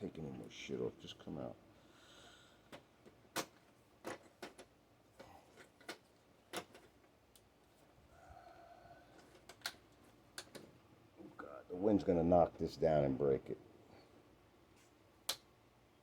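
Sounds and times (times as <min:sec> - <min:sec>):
faint steady hum: 0:00.0 - 0:16.0
plastic parts clicking and tapping: 0:02.7 - 0:07.5, 0:09.2 - 0:10.7.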